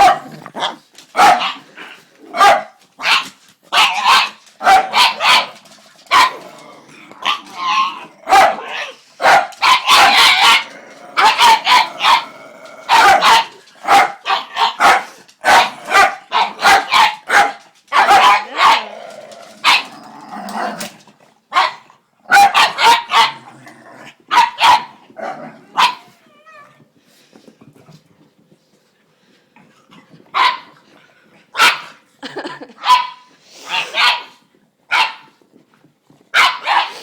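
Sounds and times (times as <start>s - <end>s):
dog barking in sharp yaps: 7.2s - 10.6s, 12.9s - 18.8s, 21.6s - 23.4s, 24.3s - 25.0s, 32.8s - 35.3s, 36.4s - 37.0s.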